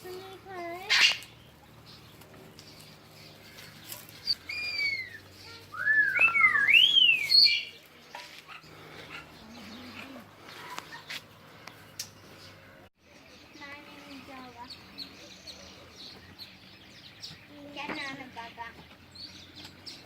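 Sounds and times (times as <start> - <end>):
bird whistled calls: 4.4 - 7.8.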